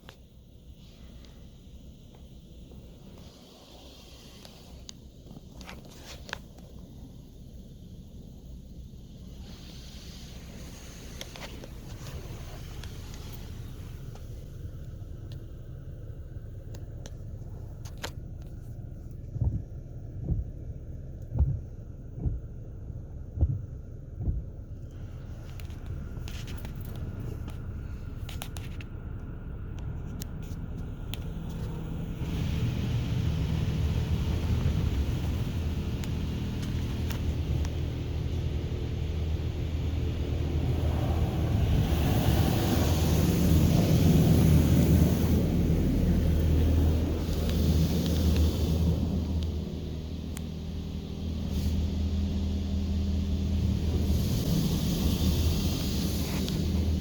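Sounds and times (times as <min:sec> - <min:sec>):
car wash machinery rumbling: 0:00.0 - 0:57.0
dull thumps: 0:19.3 - 0:24.8.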